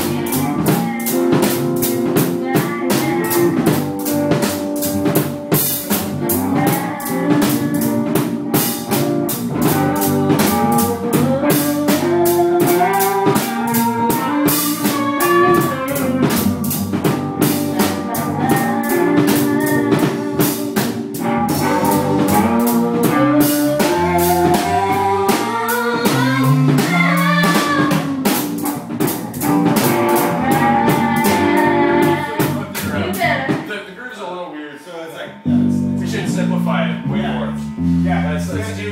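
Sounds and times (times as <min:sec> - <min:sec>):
bending guitar lines: 0:00.0 - 0:33.6, 0:35.4 - 0:38.9
walking bass line: 0:00.0 - 0:33.6, 0:35.4 - 0:38.9
drum kit beat: 0:00.0 - 0:34.0, 0:35.3 - 0:38.9.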